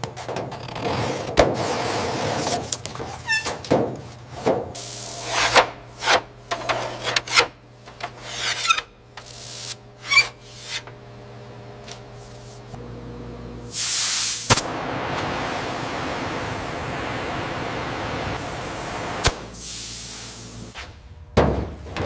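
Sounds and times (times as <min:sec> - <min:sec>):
loud hiss: 0:13.7 - 0:20.8.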